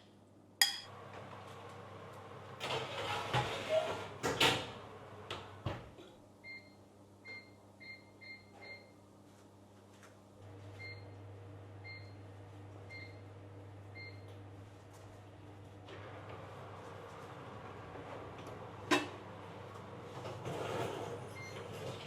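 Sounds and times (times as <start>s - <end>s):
appliance humming: 0.6s - 6.2s, 10.4s - 22.0s.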